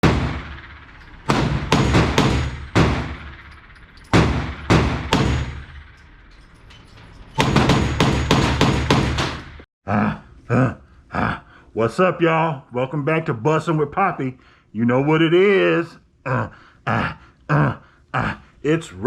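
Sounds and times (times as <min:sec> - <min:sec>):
gunshots echoing indoors: 0:00.0 - 0:05.9, 0:07.4 - 0:09.6.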